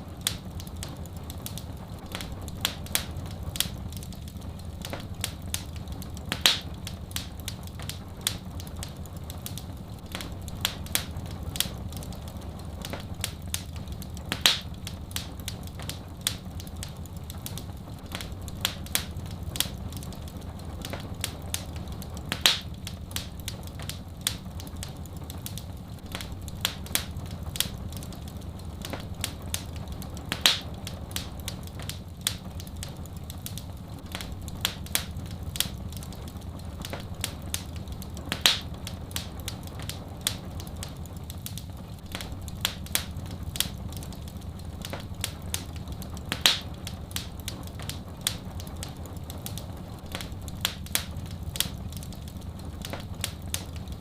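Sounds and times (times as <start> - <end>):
low fire rumble: 0.0 - 54.0
wood fire crackling: 0.0 - 54.0
loud fire pop: 22.4 - 22.8, 38.4 - 38.7.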